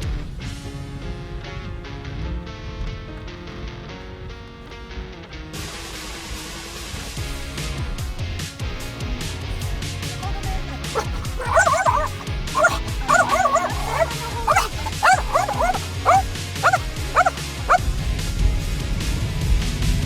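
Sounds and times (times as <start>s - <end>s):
music: 0.2s - 20.0s
dog whining and yipping: 9.5s - 17.8s.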